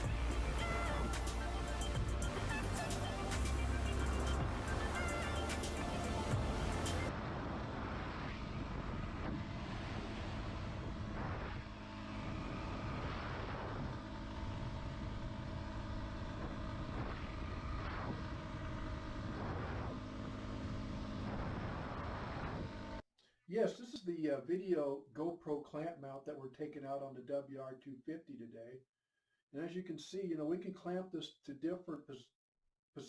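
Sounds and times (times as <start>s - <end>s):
motorcycle engine running: 0.0s - 7.1s.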